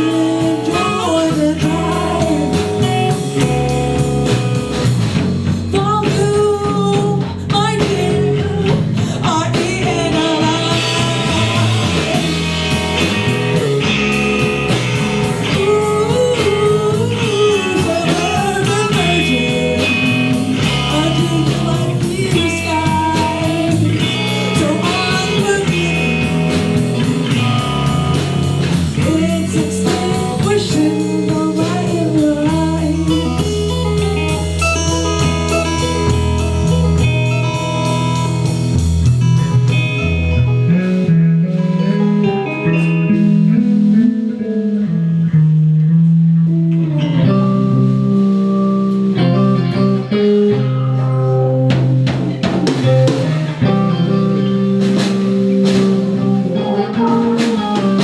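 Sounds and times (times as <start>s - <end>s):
person singing: 0.0s - 4.8s, 5.5s - 38.2s, 49.1s - 58.0s
drums: 0.0s - 58.0s
electric guitar: 0.0s - 58.0s.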